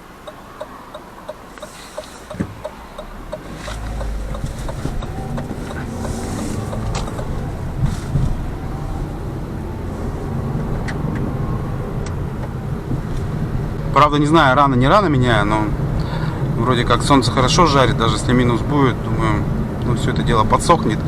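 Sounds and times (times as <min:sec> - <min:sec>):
regular ticking: 0:00.0 - 0:07.9
car engine and road noise: 0:00.0 - 0:21.0.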